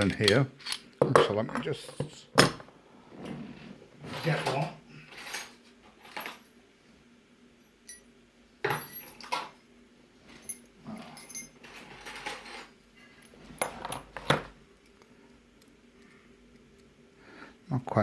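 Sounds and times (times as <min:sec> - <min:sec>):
metal lock parts clinking: 0:10.4 - 0:15.0.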